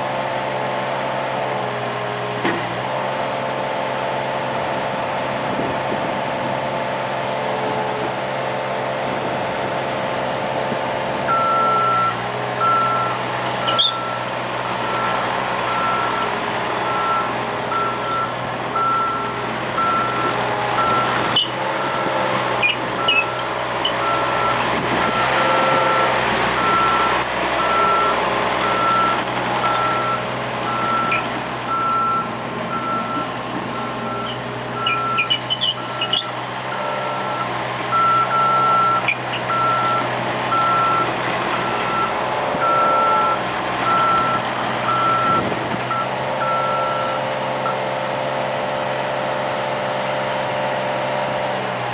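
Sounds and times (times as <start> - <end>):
diesel engine droning: 0.0 - 51.9
clanks and squeaks: 13.5 - 17.9, 19.0 - 27.1, 27.7 - 31.9, 32.8 - 37.4, 38.0 - 39.9
alarm beeps: 42.0 - 47.8.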